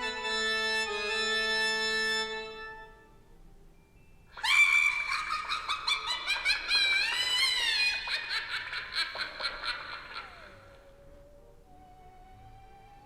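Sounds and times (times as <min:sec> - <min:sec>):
high cackling laugh alert tone: 0:04.4 - 0:10.9.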